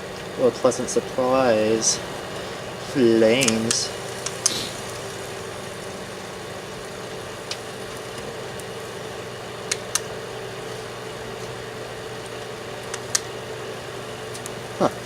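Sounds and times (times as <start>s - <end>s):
microwave oven humming: 0.0s - 15.0s
sharp pops: 3.4s - 5.1s.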